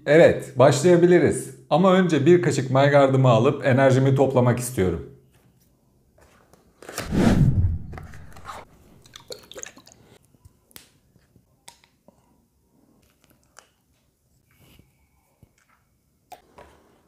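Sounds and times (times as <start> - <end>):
lip smacks and mouth clicks: 13.0 - 13.8, 15.4 - 16.7.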